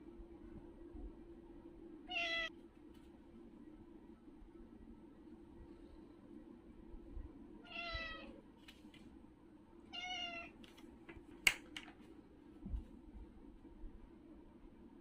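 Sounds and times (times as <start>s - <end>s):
steady low hum: 0.0s - 15.0s
cat meowing: 2.1s - 2.5s, 7.6s - 8.4s, 9.9s - 10.6s
sharp click: 11.4s - 11.9s.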